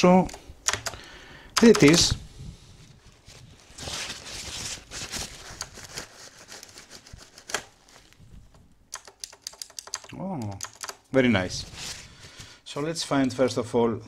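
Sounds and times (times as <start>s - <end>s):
keyboard key clicks: 8.9s - 11.0s.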